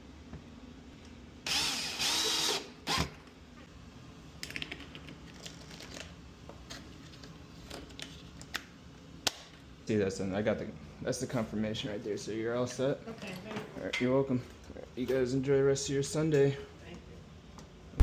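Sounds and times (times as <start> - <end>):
small electric motor whirring: 1.5 - 3.1.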